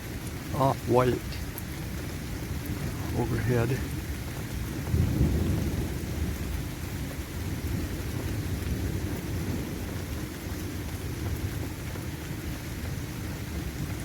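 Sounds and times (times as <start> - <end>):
thunderstorm rumbling roar: 2.7 - 11.7.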